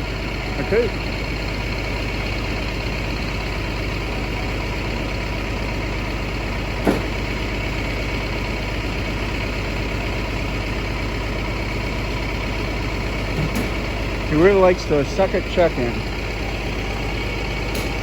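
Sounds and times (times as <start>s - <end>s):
bus engine idling: 0.0s - 18.0s.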